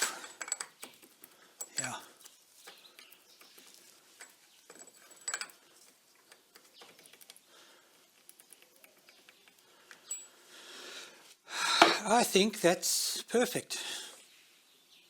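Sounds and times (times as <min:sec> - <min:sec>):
metallic clinks of tools: 0:04.2 - 0:05.9, 0:10.0 - 0:10.4.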